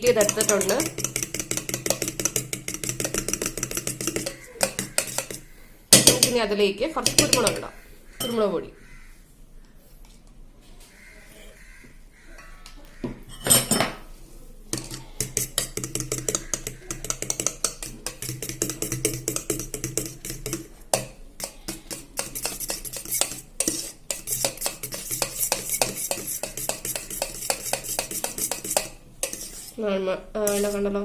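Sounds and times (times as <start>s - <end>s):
eggs beaten in a bowl: 0.0s - 7.8s, 14.7s - 29.8s, 30.4s - 30.9s.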